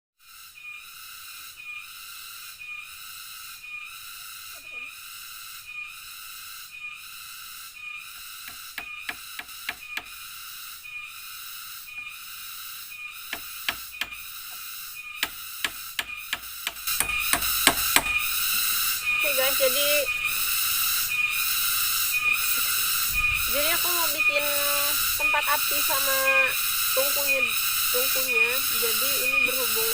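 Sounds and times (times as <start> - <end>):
insect chorus shrill buzzing: 0.2 - 29.9
sharp clicks and knocks: 15.2 - 18.6.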